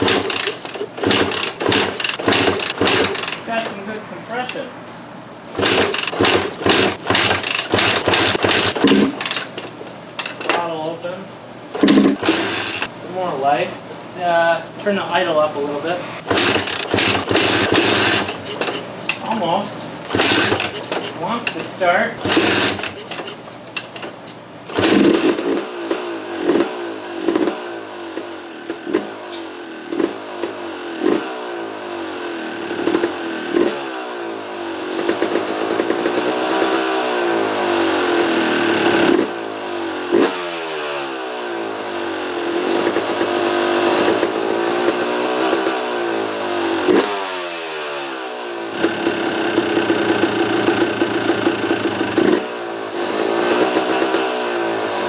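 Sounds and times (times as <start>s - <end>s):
engine kick start: 0.0s - 4.6s, 5.5s - 10.9s, 11.7s - 12.9s, 16.2s - 31.3s, 32.6s - 33.8s, 34.8s - 39.4s, 42.2s - 47.2s, 48.7s - 54.4s
two-stroke engine revving: 0.0s - 4.7s, 5.4s - 11.0s, 11.7s - 12.9s, 15.8s - 55.0s.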